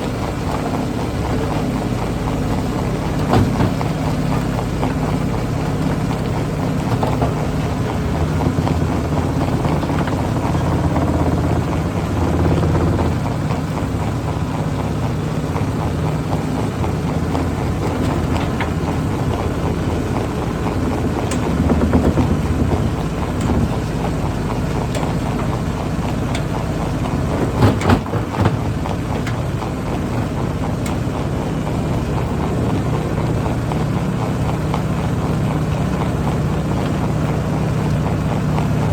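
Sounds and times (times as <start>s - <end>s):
excavator diesel engine running: 0.0s - 38.9s
sharp knocks: 16.8s - 29.4s.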